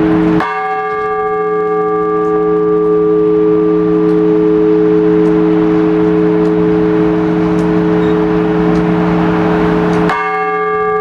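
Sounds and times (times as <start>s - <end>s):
large church bell humming: 0.0s - 11.0s.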